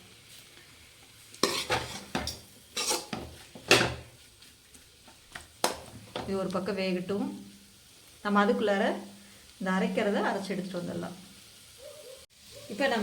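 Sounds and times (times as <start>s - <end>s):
spoon scraping a pan: 1.3s - 4.2s.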